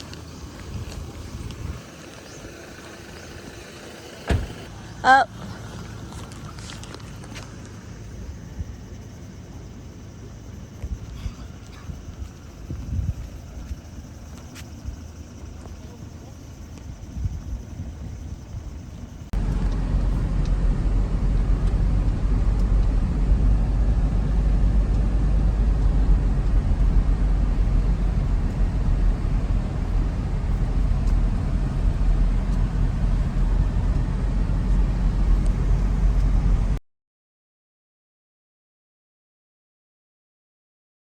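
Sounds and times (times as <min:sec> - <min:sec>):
wind buffeting microphone: 0:00.0 - 0:02.7, 0:10.8 - 0:15.2, 0:16.8 - 0:36.8
vehicle rumble: 0:00.0 - 0:36.8.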